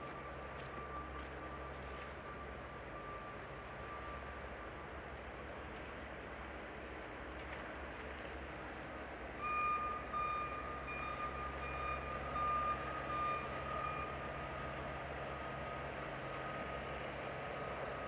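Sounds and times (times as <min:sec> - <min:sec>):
reversing alarm beeping: 0:00.0 - 0:04.4, 0:09.4 - 0:14.6
street noise: 0:00.0 - 0:18.0.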